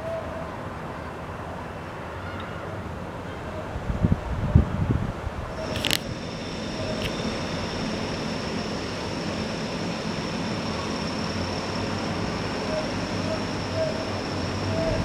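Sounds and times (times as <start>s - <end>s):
brief clicks: 5.6s - 6.1s, 6.9s - 7.3s
thin high whine: 5.6s - 15.0s
vehicle running with low hum: 5.6s - 15.0s.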